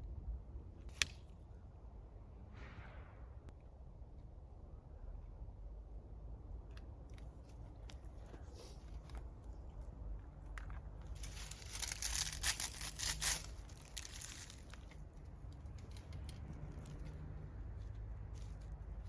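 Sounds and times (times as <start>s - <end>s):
campfire kindling crackling: 11.0s - 17.4s.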